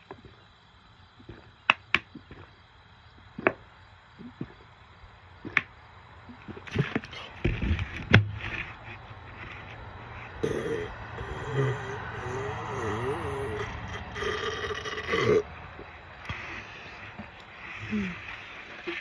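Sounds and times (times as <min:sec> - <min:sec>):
handling noise with dull thumps: 0:06.7 - 0:09.8.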